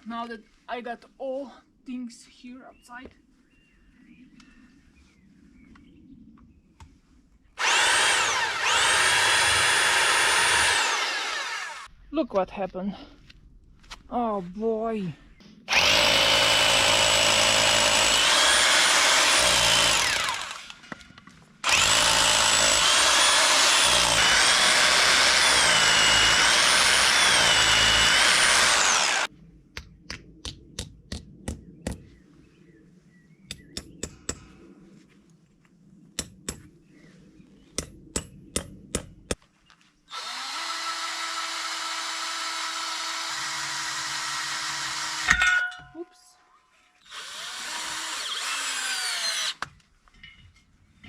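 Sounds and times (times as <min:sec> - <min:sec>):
power drill drilling: 0:07.6 - 0:11.9, 0:15.7 - 0:20.8, 0:21.6 - 0:29.3, 0:40.1 - 0:45.3, 0:47.0 - 0:49.6.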